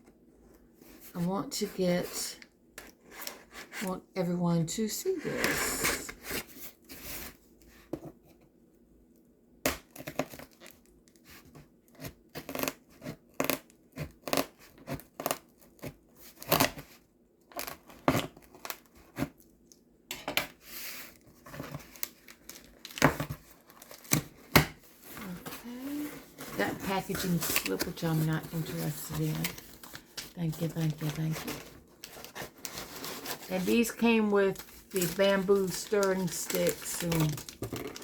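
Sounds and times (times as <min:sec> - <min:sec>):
packaging tearing and crinkling: 0:21.1 - 0:24.6, 0:27.3 - 0:38.0.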